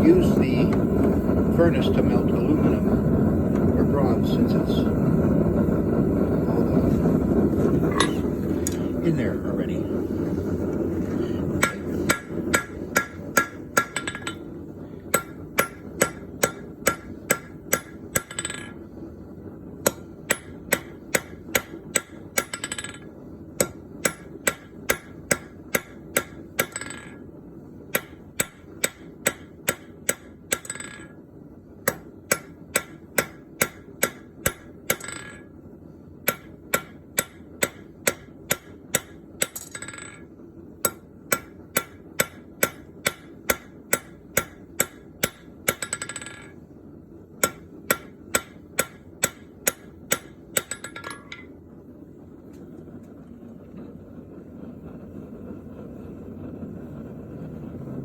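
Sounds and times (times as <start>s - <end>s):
low furnace roar: 0.0s - 58.0s
hammer striking metal on anvil: 7.9s - 8.3s, 11.6s - 14.5s, 15.1s - 18.8s, 19.9s - 27.2s, 27.9s - 31.2s, 31.8s - 35.5s, 36.2s - 46.6s, 47.4s - 51.6s.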